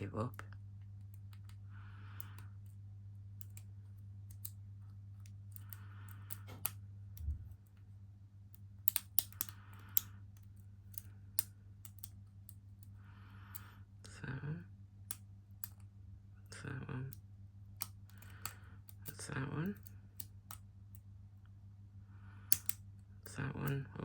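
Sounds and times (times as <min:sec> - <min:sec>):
lock pick clicking in padlock: 0:08.9 - 0:12.1, 0:22.5 - 0:22.8.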